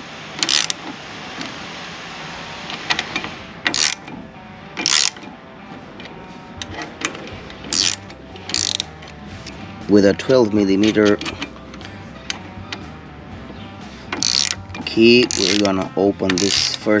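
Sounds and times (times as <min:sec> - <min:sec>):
ratchet wrench clicking: 0:00.4 - 0:00.8, 0:03.7 - 0:04.1, 0:04.8 - 0:05.2, 0:07.7 - 0:09.2, 0:14.1 - 0:17.0.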